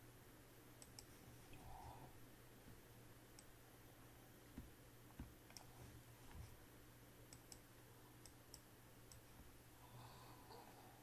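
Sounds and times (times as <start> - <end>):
room hum: 0.0 - 11.0
faint sharp clicks: 0.8 - 1.1, 7.3 - 9.3.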